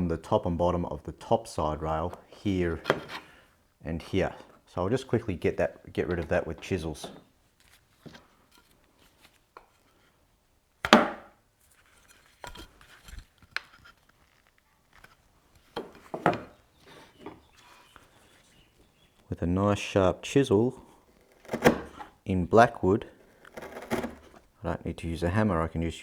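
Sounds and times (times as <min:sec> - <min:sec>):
chisel cutting wood: 0:21.2 - 0:22.1, 0:23.2 - 0:24.4.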